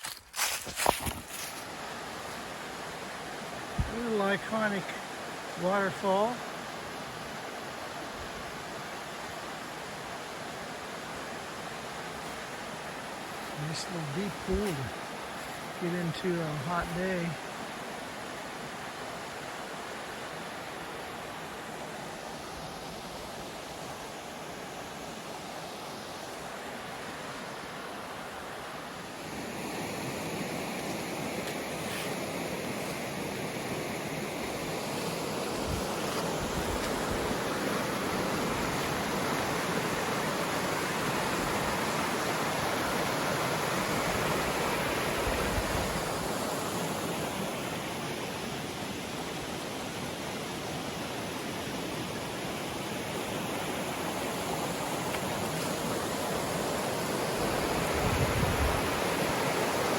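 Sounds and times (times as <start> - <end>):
waterfall rushing into pool: 1.8 - 8.1, 15.6 - 59.9.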